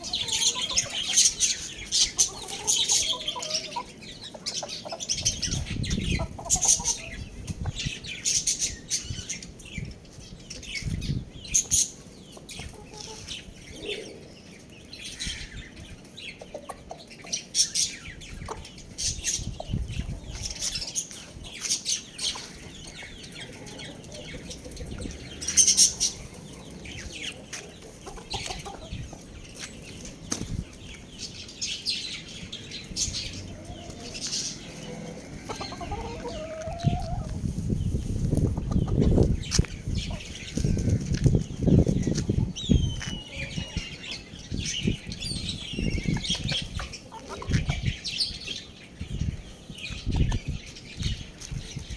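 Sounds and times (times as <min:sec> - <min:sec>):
young roosters clucking and chirping: 0:00.0 - 0:51.9
wing flapping and scuffling: 0:27.5 - 0:31.1.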